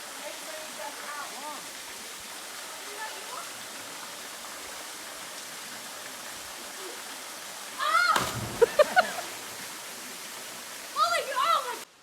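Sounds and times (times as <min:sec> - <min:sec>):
waterfall rushing: 0:07.7 - 0:10.2.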